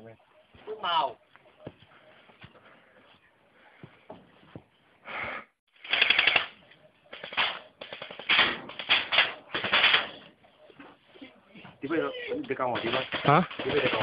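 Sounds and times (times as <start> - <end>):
airsoft rifle bursts: 5.8 - 10.2.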